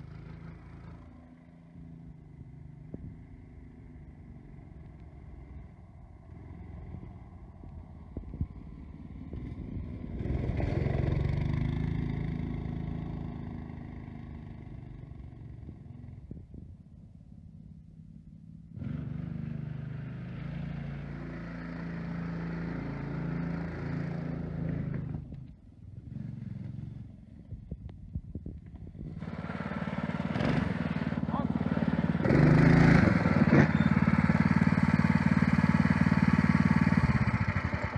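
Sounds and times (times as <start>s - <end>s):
small gas engine running: 28.7s - 37.9s.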